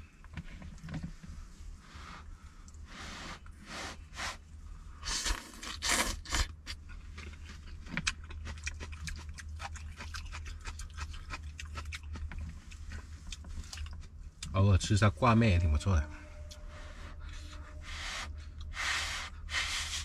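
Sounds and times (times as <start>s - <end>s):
wet chewing: 5.0s - 14.6s
person slurping noodles: 17.8s - 20.0s.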